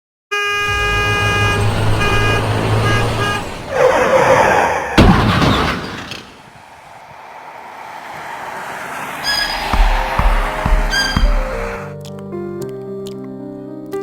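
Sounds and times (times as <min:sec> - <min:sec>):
horn blasts: 0:00.3 - 0:04.5, 0:09.0 - 0:12.0
rushing swell: 0:00.6 - 0:05.1, 0:05.8 - 0:12.0
low engine rumble: 0:00.6 - 0:11.9
loud thump: 0:05.0 - 0:07.2, 0:09.3 - 0:11.8.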